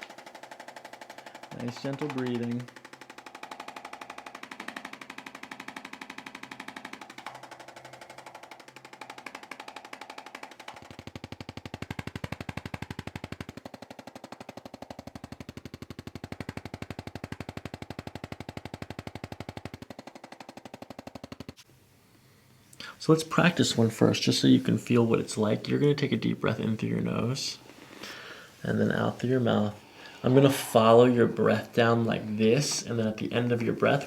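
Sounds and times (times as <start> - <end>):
electric percussion massager tapping: 0.0 - 21.7.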